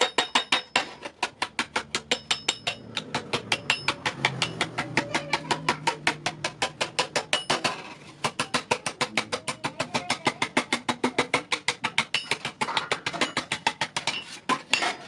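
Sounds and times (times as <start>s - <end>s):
hammer striking iron on anvil: 0.0s - 4.8s, 5.6s - 9.5s.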